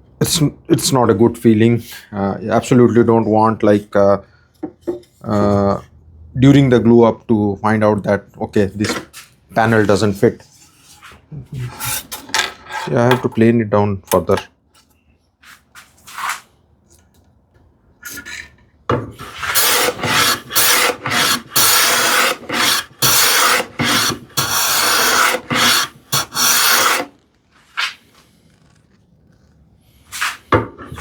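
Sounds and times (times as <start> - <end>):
hand plane scraping wood: 19.2 - 28.8.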